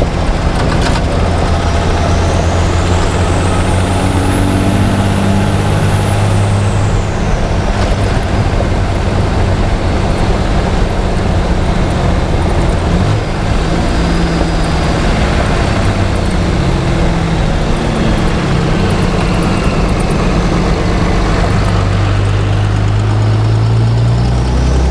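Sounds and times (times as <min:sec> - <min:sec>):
diesel truck engine pulling: 0:00.0 - 0:24.9
wind and road noise: 0:00.0 - 0:24.9
turbocharger whistle: 0:12.8 - 0:24.9.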